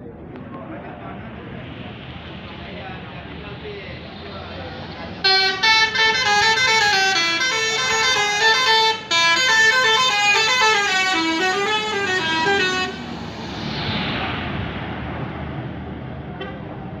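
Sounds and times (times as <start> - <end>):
rushing vehicle noise: 0.0 - 17.0
musical bus air horn melody: 5.2 - 13.1.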